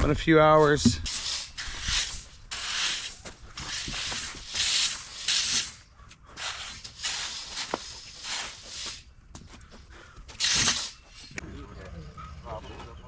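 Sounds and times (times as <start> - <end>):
rake scraping through rock: 1.0 - 5.8, 6.4 - 9.0, 10.4 - 11.3.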